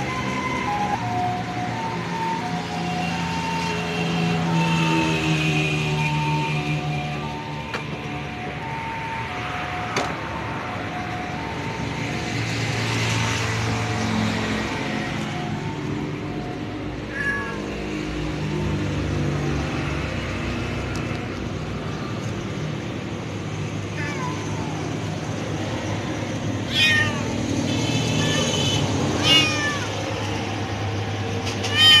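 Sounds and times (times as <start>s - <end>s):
cat meowing: 17.1s - 17.8s, 24.0s - 24.7s, 26.7s - 30.0s, 31.7s - 32.0s.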